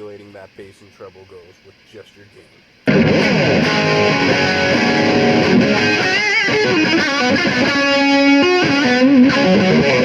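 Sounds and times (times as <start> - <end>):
distorted electric guitar lead: 2.8 - 10.0.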